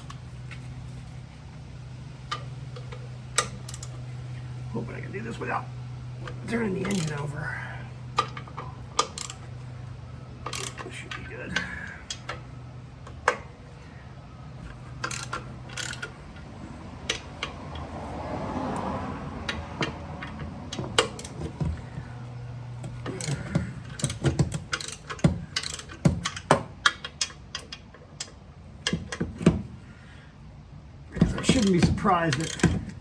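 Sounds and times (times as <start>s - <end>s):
low steady hum: 0.0s - 33.0s
ratchet wrench clicking: 2.3s - 4.1s, 6.3s - 7.4s, 8.2s - 9.6s, 10.4s - 13.8s, 14.6s - 16.5s, 22.8s - 29.2s, 31.2s - 33.0s.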